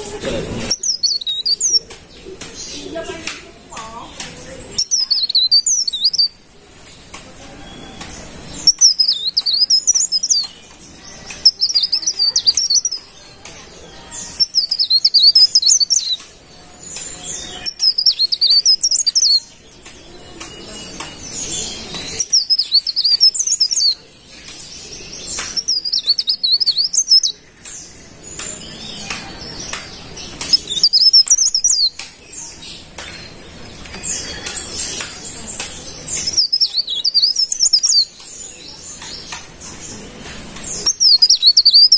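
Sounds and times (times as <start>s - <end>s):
leaf warbler singing: 0.0s - 41.9s.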